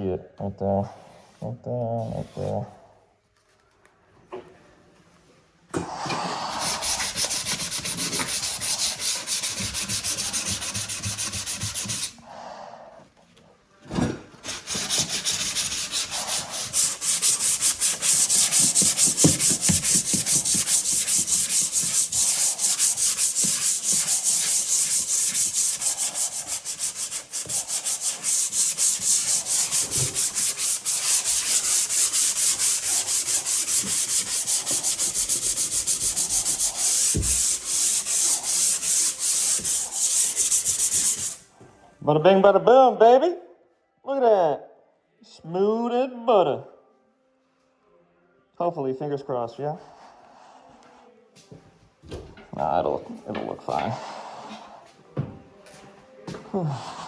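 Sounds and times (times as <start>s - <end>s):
sandpaper rubbing drywall: 6.3s - 12.2s, 14.4s - 41.5s.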